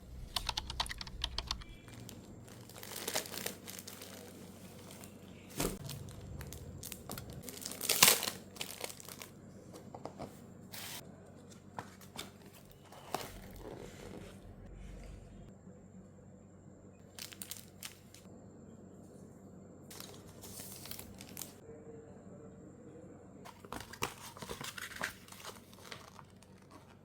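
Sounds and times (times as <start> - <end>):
packaging tearing and crinkling: 1.9 - 9.3, 17.2 - 18.2, 19.9 - 21.6, 23.7 - 27.0.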